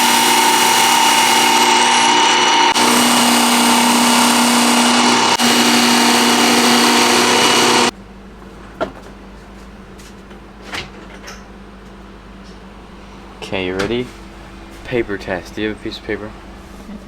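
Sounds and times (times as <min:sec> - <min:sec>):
sharpening machine motor whine: 0:00.0 - 0:07.9.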